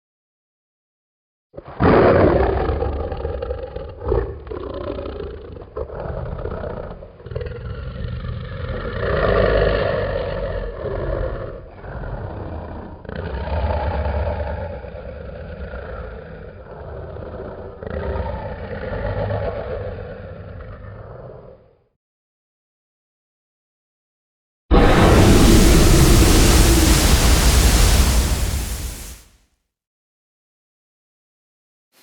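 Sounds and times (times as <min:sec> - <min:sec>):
deep growling dragon roar: 0:02.2 - 0:21.6, 0:24.7 - 0:29.2.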